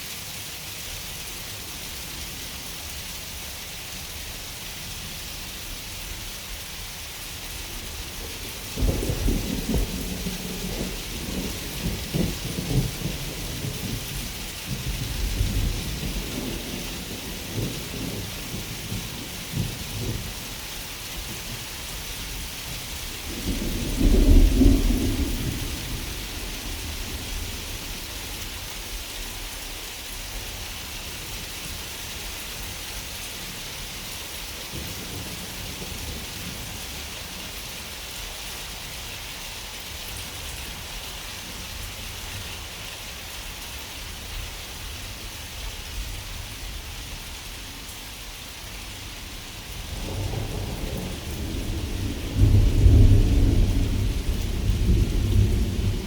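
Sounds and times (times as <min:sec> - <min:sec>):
steady rain falling: 0:00.0 - 0:56.0
deep thunder rumble: 0:08.0 - 0:20.6, 0:23.0 - 0:28.2, 0:49.2 - 0:56.0.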